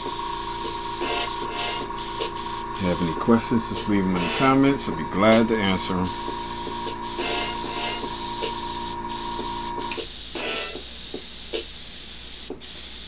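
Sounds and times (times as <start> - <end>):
airbrush spraying hiss: 0.0 - 13.0
background music: 1.0 - 8.9.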